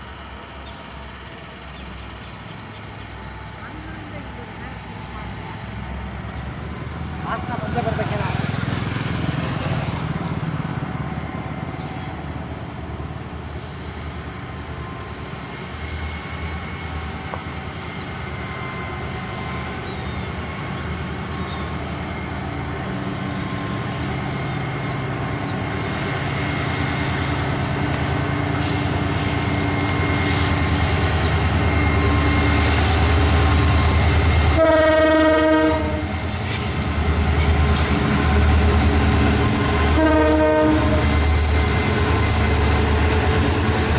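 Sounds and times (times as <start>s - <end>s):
diesel locomotive engines: 0.0s - 43.9s
train horn blast: 34.2s - 36.3s, 39.6s - 41.6s.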